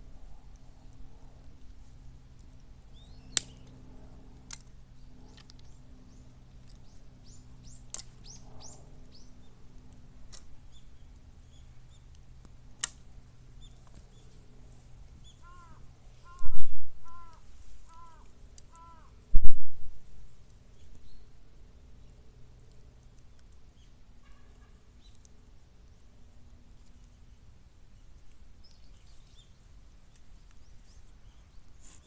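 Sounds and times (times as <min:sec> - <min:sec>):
bamboo popping in fire: 0:12.1 - 0:14.1
crow cawing: 0:15.4 - 0:16.4, 0:17.0 - 0:19.2.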